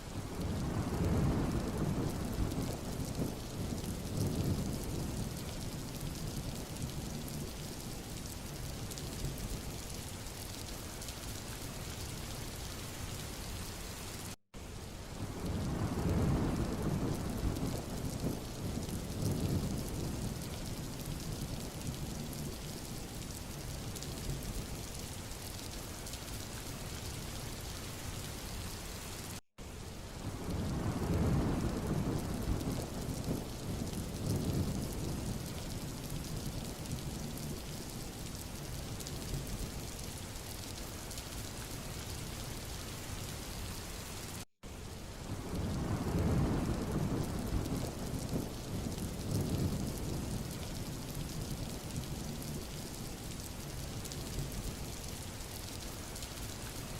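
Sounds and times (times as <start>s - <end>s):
steady rain: 0.0s - 56.9s
thunder rumbling: 0.3s - 7.6s, 15.2s - 24.7s, 30.2s - 38.0s, 45.3s - 53.4s.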